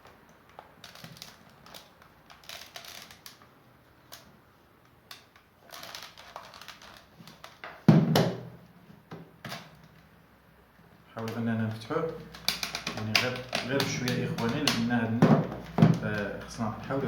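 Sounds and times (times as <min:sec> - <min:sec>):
plastic parts clicking and scraping: 0:00.1 - 0:07.8, 0:12.2 - 0:17.0.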